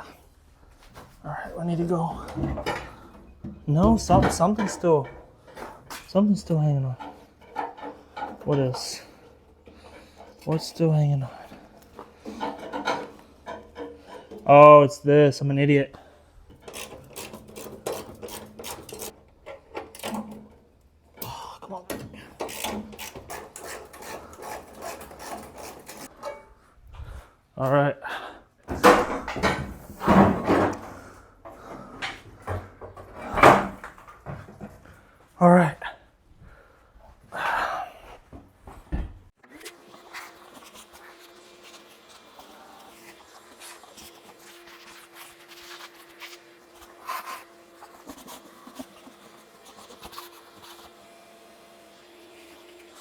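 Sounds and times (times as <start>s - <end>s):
clunks and scraping of a part: 2.2s - 6.1s, 7.0s - 10.6s, 11.4s - 14.5s, 16.5s - 20.7s, 21.9s - 26.6s, 28.7s - 34.8s
rubbing sounds: 39.4s - 51.5s.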